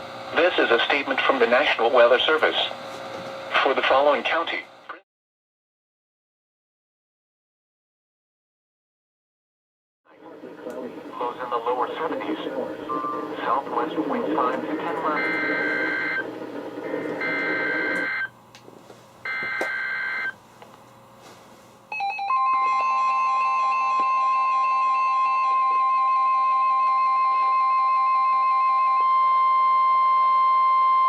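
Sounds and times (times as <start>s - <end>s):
steady warning alarm tone: 11.1s - 18.4s, 19.2s - 20.4s, 21.9s - 31.0s
pulsing alert beep: 15.0s - 16.3s, 16.9s - 18.3s.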